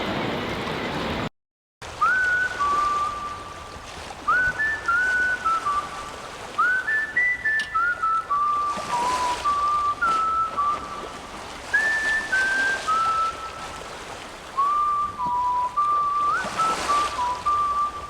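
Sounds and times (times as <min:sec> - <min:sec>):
person whistling a tune: 0:02.0 - 0:03.6, 0:04.3 - 0:13.8, 0:14.6 - 0:18.0.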